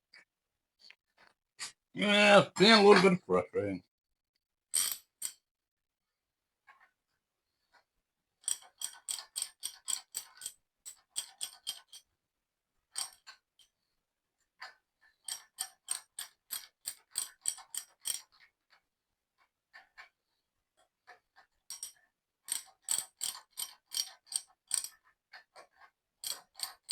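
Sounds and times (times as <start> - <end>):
ratchet wrench clicking: 22.5 - 24.9, 26.2 - 26.9.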